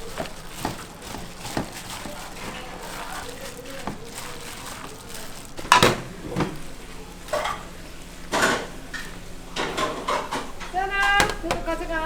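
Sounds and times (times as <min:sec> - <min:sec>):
dishes and utensils clattering: 0:00.0 - 0:12.0.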